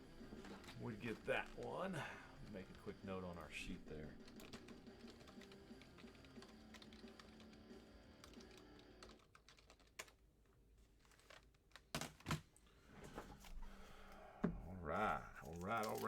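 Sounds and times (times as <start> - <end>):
typing on computer keyboard: 3.6 - 10.2.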